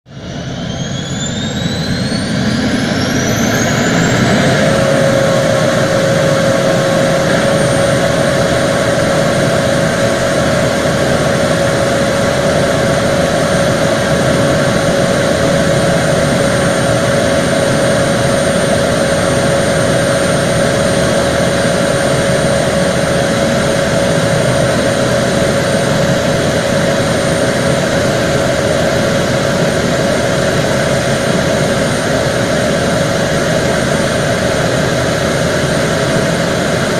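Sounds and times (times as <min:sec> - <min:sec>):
propeller drone: 0:00.0 - 0:36.9
turbine whine: 0:00.0 - 0:36.9.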